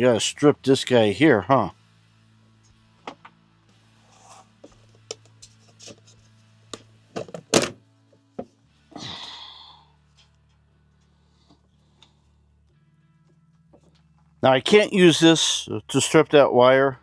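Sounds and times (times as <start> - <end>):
tools clicking and knocking: 6.8 - 7.8.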